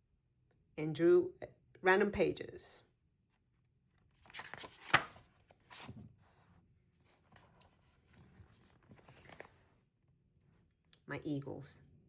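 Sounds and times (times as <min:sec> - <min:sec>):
paper pages rustling: 0:04.2 - 0:06.4, 0:07.1 - 0:09.7.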